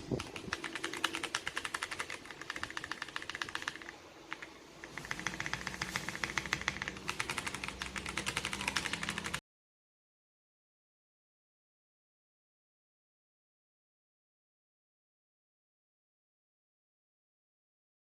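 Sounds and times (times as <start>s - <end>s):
mechanical keyboard typing: 0.0s - 9.4s.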